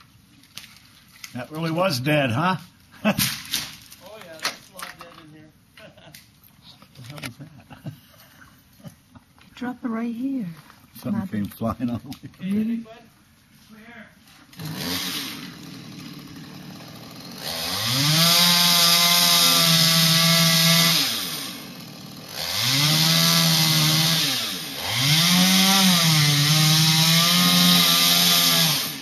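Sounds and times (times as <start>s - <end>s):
chainsaw idling and revving: 14.5s - 29.0s.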